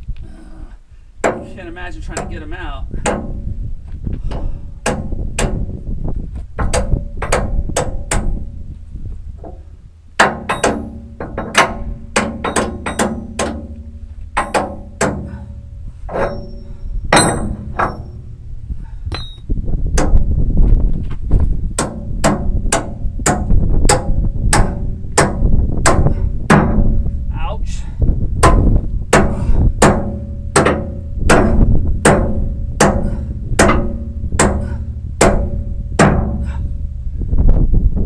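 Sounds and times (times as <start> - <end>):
hammer striking steel pin: 6.6 - 8.4, 10.2 - 15.4, 16.1 - 18.3, 21.8 - 26.8, 28.4 - 36.4.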